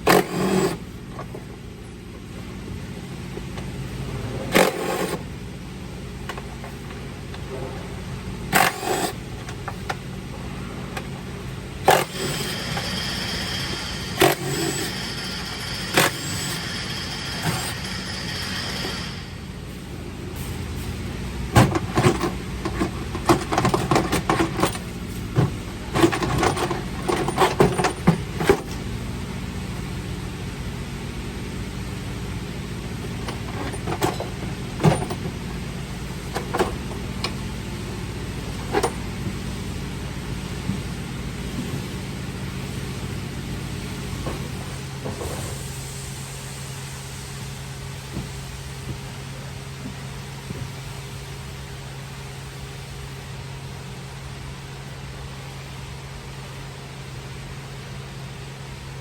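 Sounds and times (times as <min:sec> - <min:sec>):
metallic clanks and knocks: 0:11.9 - 0:19.4
high thin whine: 0:11.9 - 0:21.0.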